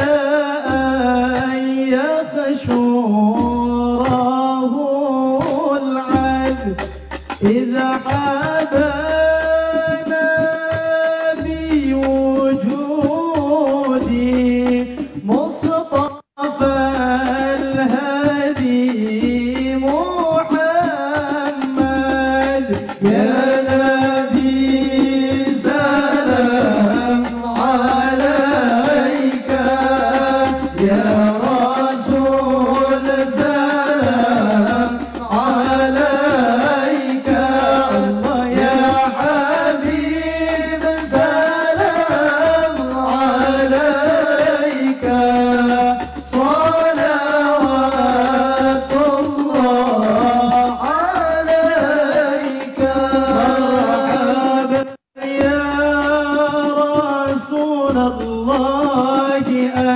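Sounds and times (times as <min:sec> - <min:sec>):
low beat: 0:16.6 - 0:52.0.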